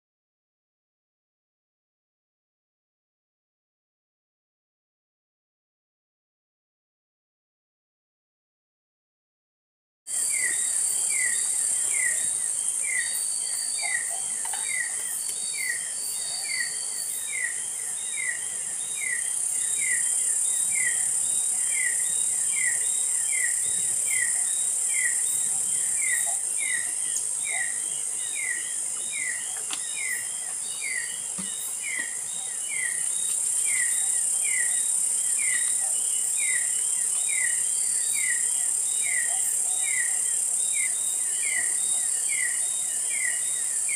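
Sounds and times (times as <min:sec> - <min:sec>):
insects buzzing: 0:10.1 - 0:43.9.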